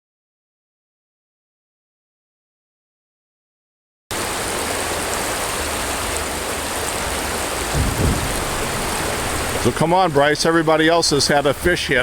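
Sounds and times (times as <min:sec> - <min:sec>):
flowing river water: 0:04.1 - 0:12.0
low rumble: 0:07.7 - 0:09.9.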